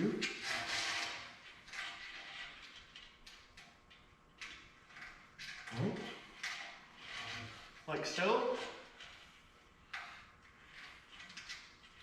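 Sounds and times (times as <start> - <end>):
cable scraping: 5.1 - 9.4.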